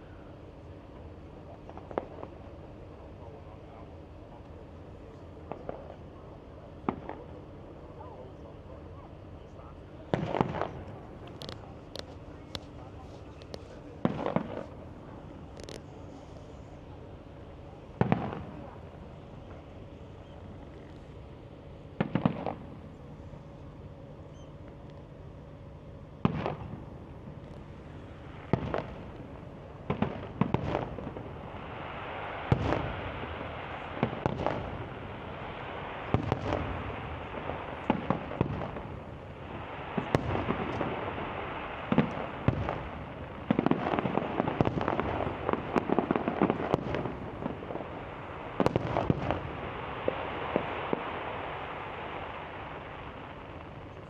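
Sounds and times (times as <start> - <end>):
fireworks bangs and crackle: 1.0 - 2.6, 5.1 - 6.1, 6.7 - 8.3, 10.0 - 21.3, 21.9 - 23.6, 26.2 - 54.0.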